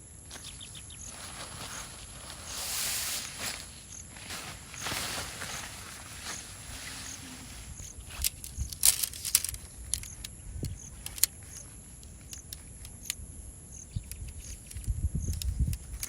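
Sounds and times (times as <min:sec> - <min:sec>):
high insect drone: 0:00.0 - 0:16.0
objects being handled clicking: 0:08.1 - 0:13.2, 0:13.9 - 0:16.0.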